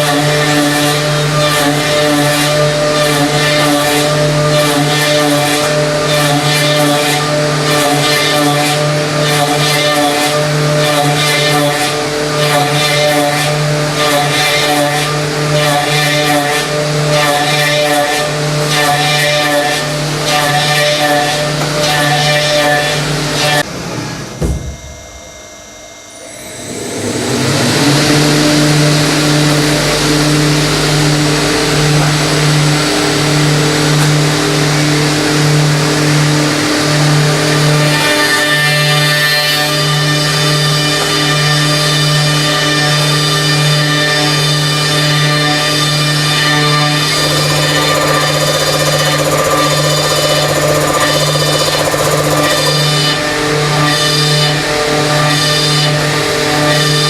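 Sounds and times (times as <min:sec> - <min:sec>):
milling machine motor hum: 0:46.0 - 0:57.0
fast rattling pulse: 0:47.1 - 0:53.0.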